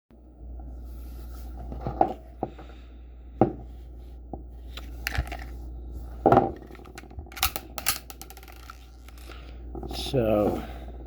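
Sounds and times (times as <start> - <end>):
steady low hum: 0.1 - 11.0
pistol clicks and clacks: 7.3 - 8.6.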